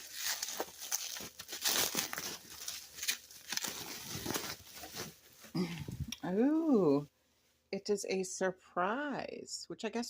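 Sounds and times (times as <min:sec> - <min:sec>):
packaging tearing: 0:00.0 - 0:05.1
packaging crumpling and crackling: 0:00.0 - 0:05.3.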